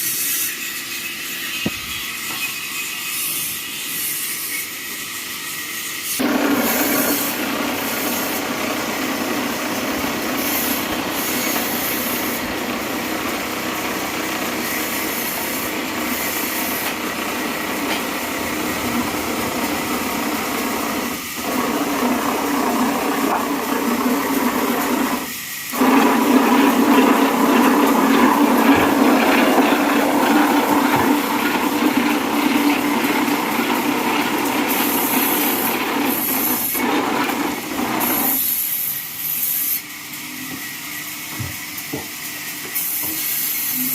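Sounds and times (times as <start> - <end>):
band saw cutting timber: 6.2 - 38.8.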